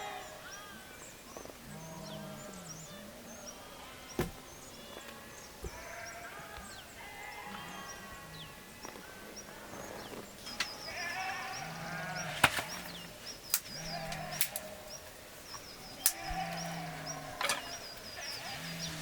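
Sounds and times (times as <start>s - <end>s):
sheep bleating: 1.7s - 9.6s, 10.9s - 13.2s, 13.8s - 14.9s, 16.0s - 19.0s.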